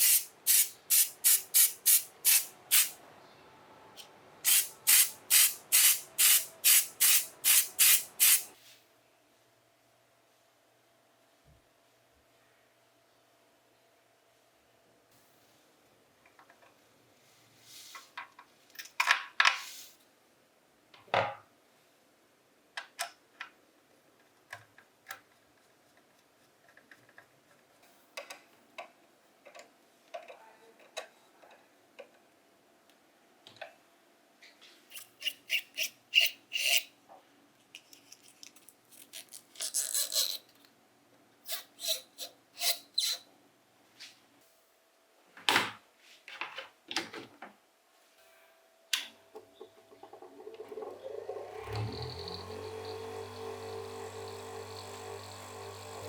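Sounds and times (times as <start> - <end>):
metal parts clicking and scraping: 34.9 - 36.9, 37.7 - 40.6.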